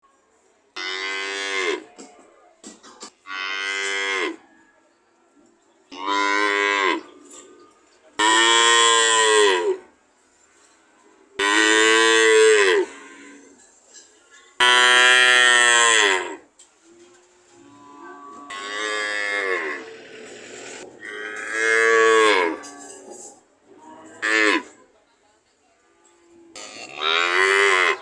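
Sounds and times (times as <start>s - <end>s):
cow mooing: 14.6s - 16.4s, 17.7s - 19.9s, 21.0s - 23.0s, 26.5s - 28.0s.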